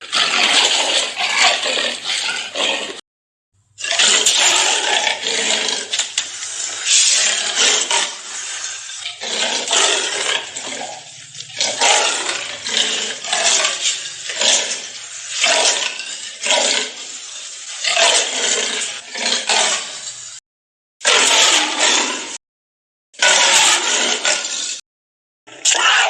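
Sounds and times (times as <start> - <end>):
big cat harsh breathy calls: 25.6 - 26.0.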